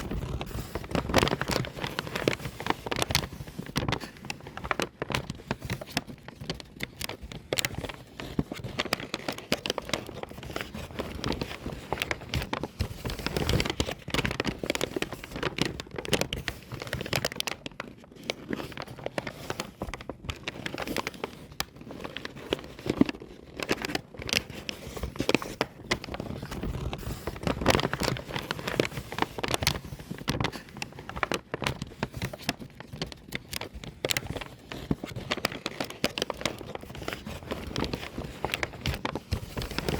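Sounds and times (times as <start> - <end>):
paper bag crumpling: 0.0 - 39.9.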